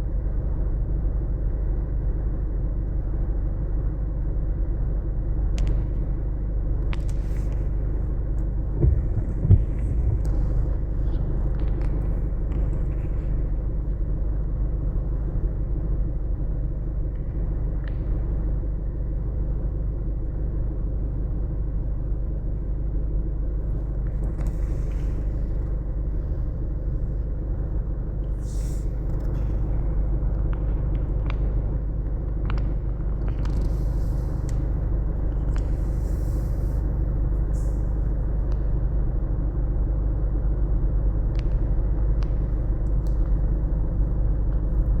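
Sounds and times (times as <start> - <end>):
vehicle engine rumbling: 7.1 - 15.5, 24.0 - 38.6.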